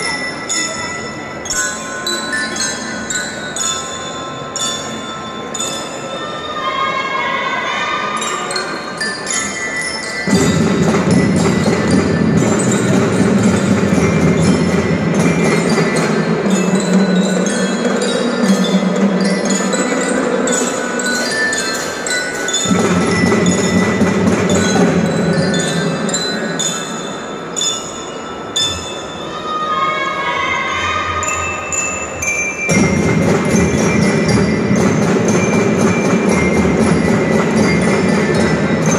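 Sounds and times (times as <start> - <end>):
bell-like mallet percussion: 0.0 - 38.9
marching band playing: 10.3 - 20.3, 22.6 - 26.2, 32.7 - 38.9.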